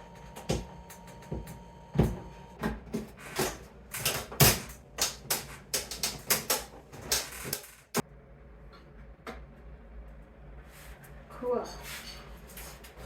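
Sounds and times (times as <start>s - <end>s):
rapid clicks and light knocks: 4.0s - 8.0s.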